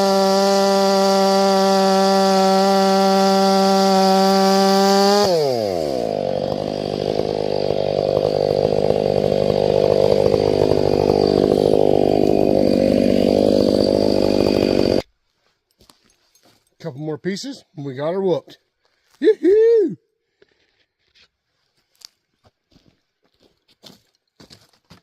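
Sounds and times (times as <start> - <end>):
chainsaw cutting a log: 0.0 - 15.1.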